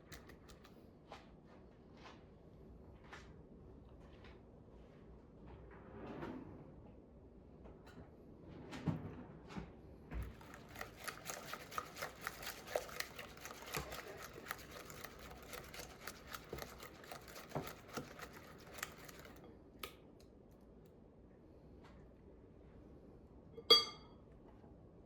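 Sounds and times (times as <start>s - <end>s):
utensil stirring oatmeal in a bowl: 0.0s - 0.8s, 10.2s - 20.0s.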